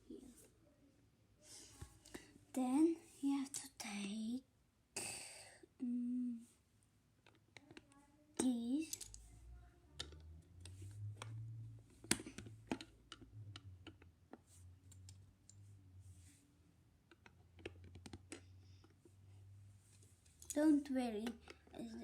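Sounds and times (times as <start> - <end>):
faint low hum: 0.0 - 22.0
plastic bricks clicking: 8.8 - 9.2, 10.0 - 11.4.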